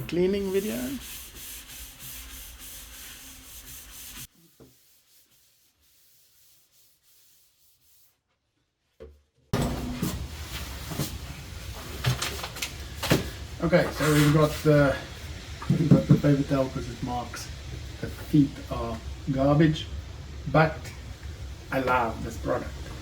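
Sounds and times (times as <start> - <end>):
paper towel rubbing on tabletop: 0.2 - 8.2, 13.7 - 15.0.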